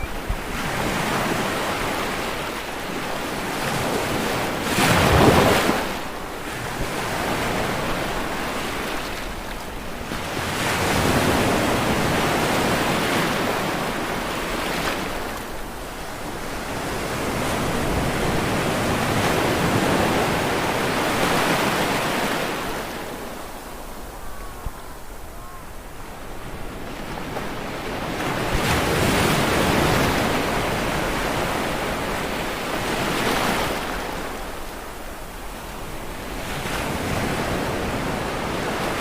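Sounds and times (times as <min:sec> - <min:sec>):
ocean waves breaking on shore: 0:00.0 - 0:39.0.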